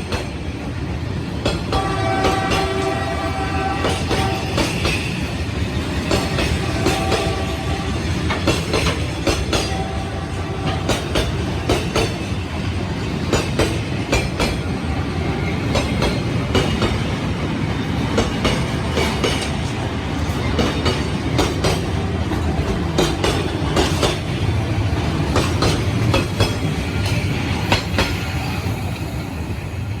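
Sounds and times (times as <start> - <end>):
freight train rumble: 0.0 - 30.0
wheels clacking over rail joints: 1.4 - 10.0, 10.6 - 28.2.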